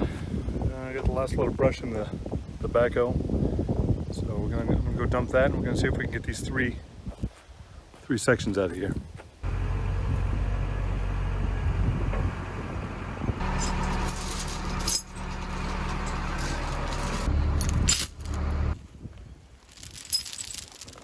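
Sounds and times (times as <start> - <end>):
backhoe engine running: 9.4 - 18.8
knocks and rattles: 13.4 - 18.8.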